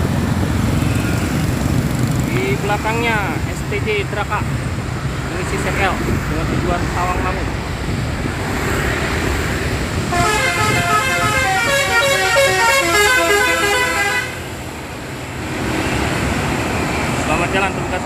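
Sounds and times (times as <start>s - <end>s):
engine and traffic rumble: 0.0s - 18.0s
musical air horn tune: 10.1s - 14.5s.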